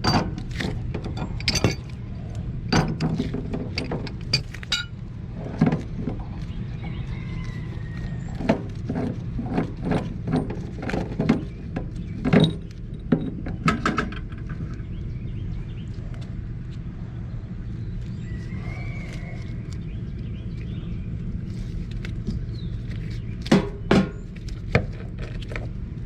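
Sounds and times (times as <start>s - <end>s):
metal pipe clinks and knocks: 0.0s - 2.0s, 2.7s - 5.0s
steady low hum: 0.0s - 26.0s.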